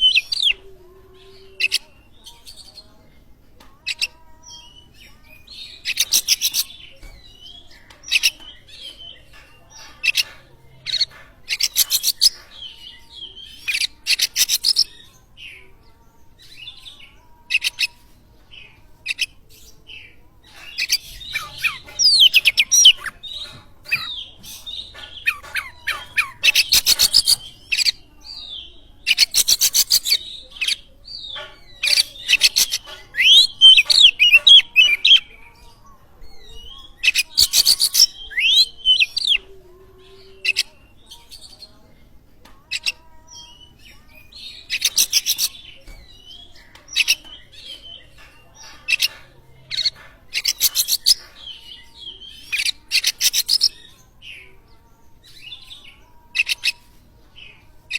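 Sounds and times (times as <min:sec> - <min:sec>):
bird harsh rattling notes: 0:20.5 - 0:27.8.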